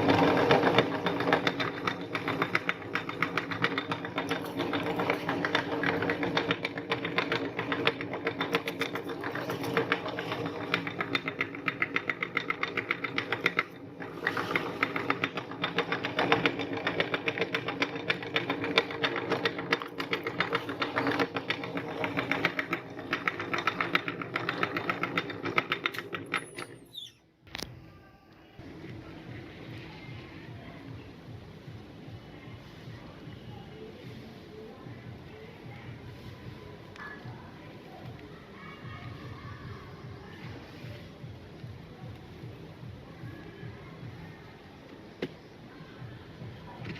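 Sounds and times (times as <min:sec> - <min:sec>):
meat grinder motor grinding: 0:00.0 - 0:11.8.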